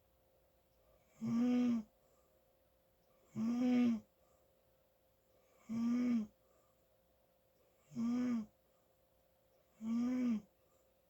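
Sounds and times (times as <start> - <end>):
loud snoring: 1.2 - 1.8, 3.3 - 4.0, 5.6 - 6.3, 7.9 - 8.5, 9.8 - 10.4.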